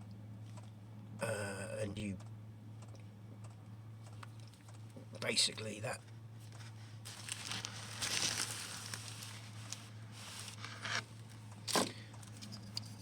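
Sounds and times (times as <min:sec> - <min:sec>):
steady low hum: 0:00.0 - 0:13.0
plastic crinkling and rustling: 0:06.5 - 0:11.0.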